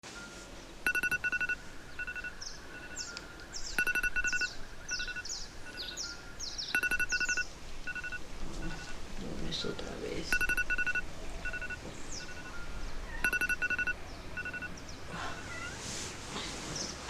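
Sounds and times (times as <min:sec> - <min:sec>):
birds chirping: 0:00.1 - 0:15.8
electronic alarm beeping: 0:00.2 - 0:09.0, 0:10.3 - 0:14.8.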